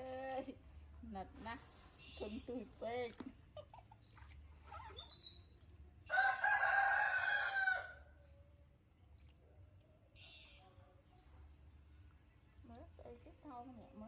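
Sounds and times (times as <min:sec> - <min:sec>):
faint high squeaks: 0:04.0 - 0:05.6
rooster crowing: 0:06.1 - 0:08.2.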